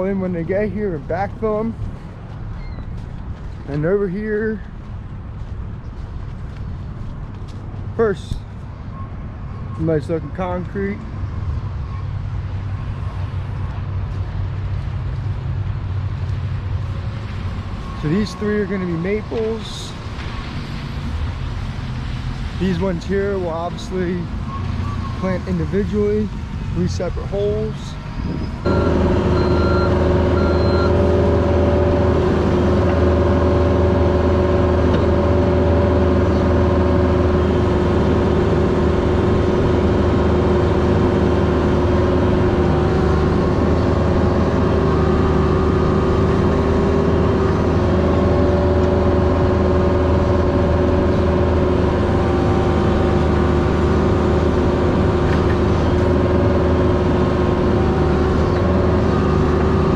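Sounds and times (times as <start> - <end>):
excavator diesel engine running: 28.4 - 59.9
short beeps: 28.7 - 31.0.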